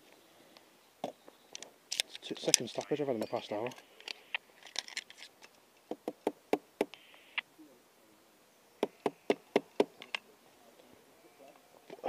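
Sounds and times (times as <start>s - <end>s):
airsoft gun mechanical clicks: 1.5s - 2.9s.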